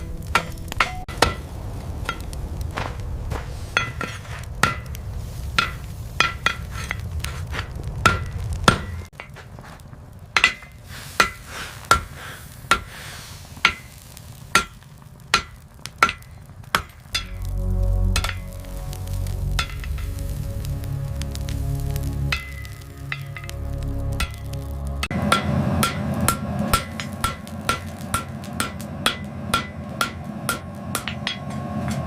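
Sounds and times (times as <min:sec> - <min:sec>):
hammer striking steel on anvil: 0:00.0 - 0:01.5, 0:03.8 - 0:05.0, 0:05.6 - 0:07.0, 0:08.0 - 0:09.4, 0:10.4 - 0:12.1, 0:12.7 - 0:12.9, 0:13.6 - 0:18.9, 0:19.5 - 0:20.2, 0:22.3 - 0:32.0
low rumble: 0:00.0 - 0:09.1, 0:15.7 - 0:32.0.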